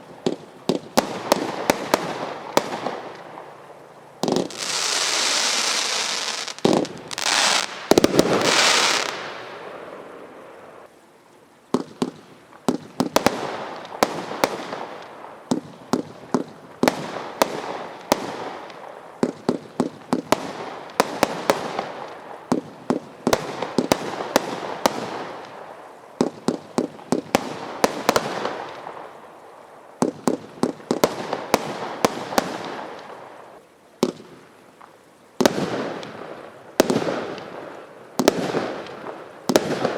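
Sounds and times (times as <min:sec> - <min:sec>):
fireworks hissing and crackling: 0:00.0 - 0:10.9, 0:11.7 - 0:39.9
firework bangs: 0:04.2 - 0:10.0, 0:38.2 - 0:39.9.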